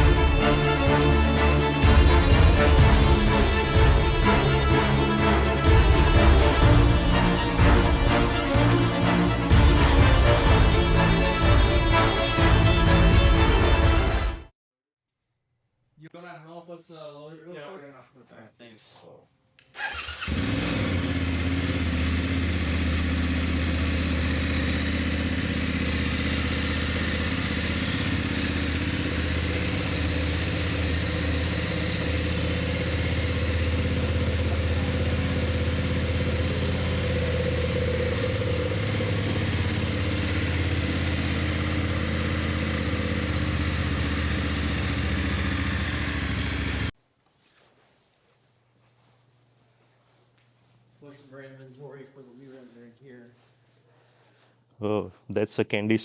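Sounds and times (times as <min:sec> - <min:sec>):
motorcycle engine idling: 0:00.0 - 0:14.1, 0:19.8 - 0:46.9.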